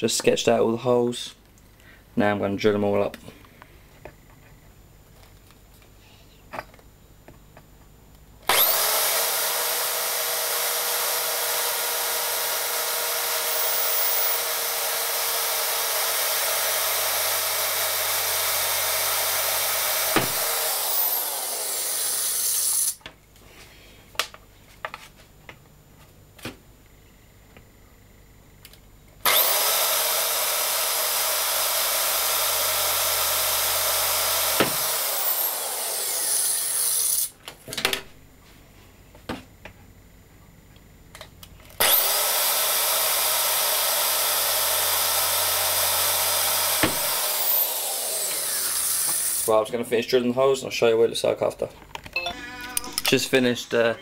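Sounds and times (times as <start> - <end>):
power tool cutting wood: 8.5 - 23.0, 29.2 - 37.3, 41.8 - 49.5.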